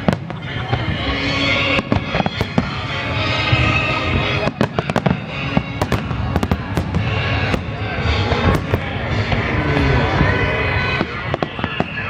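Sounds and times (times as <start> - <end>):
fireworks bangs and pops: 0.0 - 12.0
fireworks crackle: 0.0 - 12.0.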